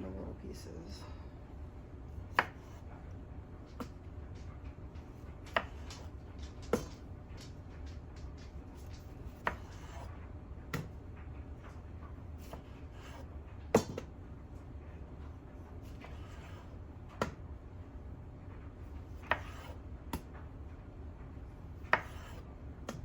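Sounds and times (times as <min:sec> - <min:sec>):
low steady hum: 0:00.0 - 0:23.0
knife knocking on cutting board: 0:05.5 - 0:07.0, 0:13.7 - 0:14.1.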